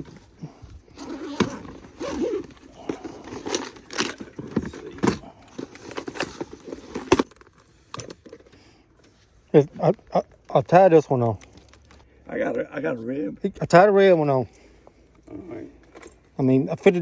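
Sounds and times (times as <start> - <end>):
plastic tackle boxes rattling: 0.0 - 8.6.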